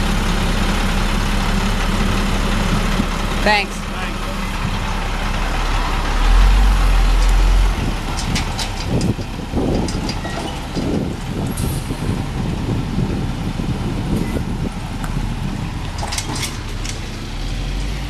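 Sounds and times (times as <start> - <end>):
heavy truck engine running: 0.0 - 18.0
crunching and rattling: 8.0 - 11.4, 15.8 - 18.0.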